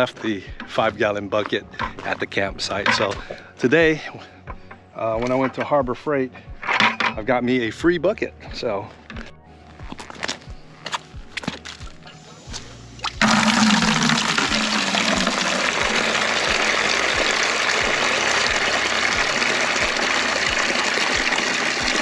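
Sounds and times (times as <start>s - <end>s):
water pouring into a bucket: 13.0s - 22.0s.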